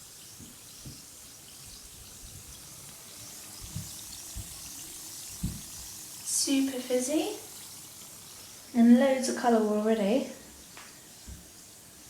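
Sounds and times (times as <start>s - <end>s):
bath bomb fizzing: 0.5s - 9.4s
soft low thumps: 5.3s - 5.8s.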